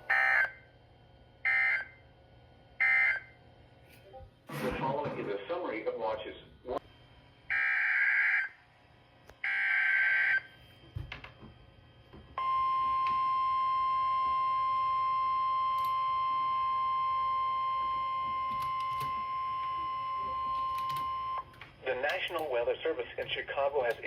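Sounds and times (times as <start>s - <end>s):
steady warning alarm tone: 0.0s - 0.6s, 1.4s - 2.0s, 2.8s - 3.4s, 7.4s - 8.6s, 9.4s - 10.8s, 12.4s - 22.2s.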